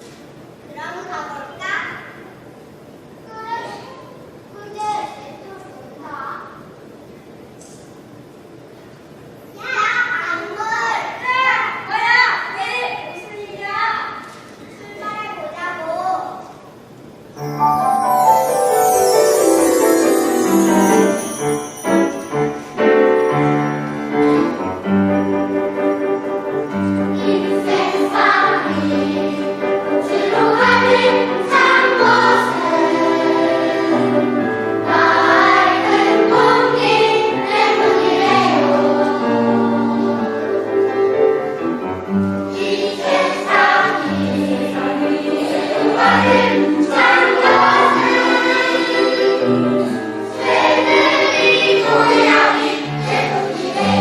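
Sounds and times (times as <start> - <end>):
sustained accompaniment: 17.4 - 54.0
choir of adults and children singing: 26.1 - 41.1, 42.2 - 54.0.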